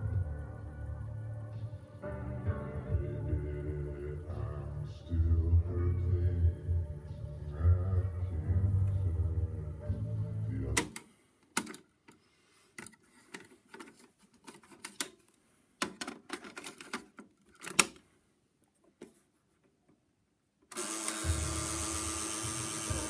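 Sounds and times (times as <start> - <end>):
music playback: 0.0 - 11.1, 20.8 - 23.0
tape hiss and mains hum: 0.0 - 23.0.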